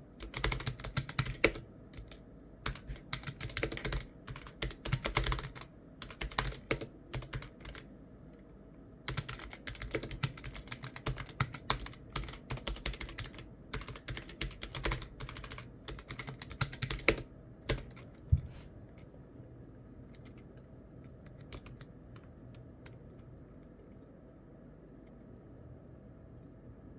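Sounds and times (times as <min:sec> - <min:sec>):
typing on computer keyboard: 0:00.2 - 0:07.9, 0:09.1 - 0:18.1, 0:20.1 - 0:23.3.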